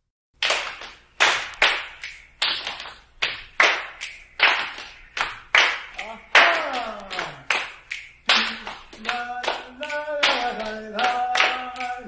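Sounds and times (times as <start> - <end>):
rhythmic hand clapping: 0.4 - 12.0.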